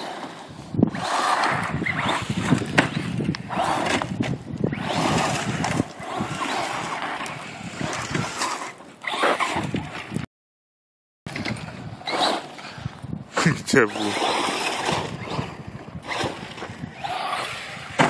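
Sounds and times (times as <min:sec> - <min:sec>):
toy car motor surging: 0:00.8 - 0:09.9, 0:12.0 - 0:12.7, 0:13.7 - 0:18.0.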